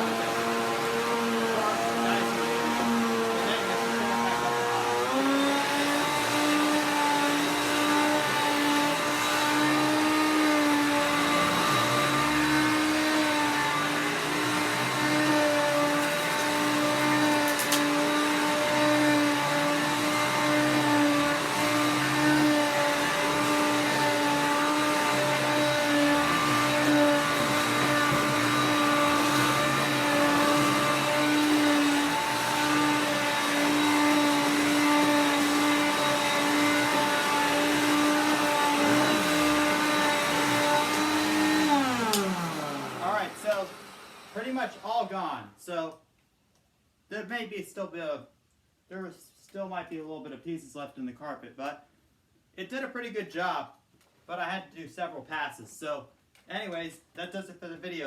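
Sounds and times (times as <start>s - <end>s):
vacuum cleaner motor whine: 0.0s - 44.9s.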